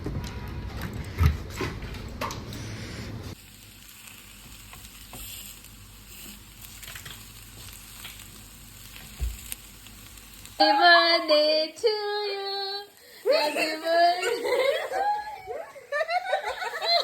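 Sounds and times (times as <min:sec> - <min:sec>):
food sizzling in a pan: 0:03.3 - 0:16.0.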